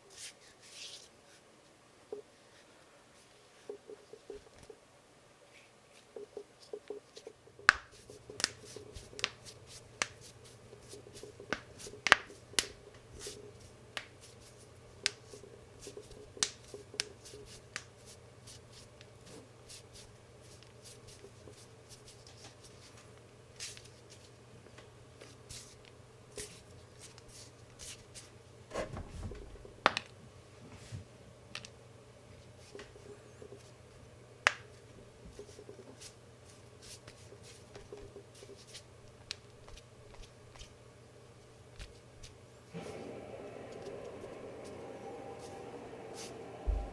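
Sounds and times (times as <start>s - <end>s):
dull thump: 28.7s - 29.8s, 46.5s - 46.9s.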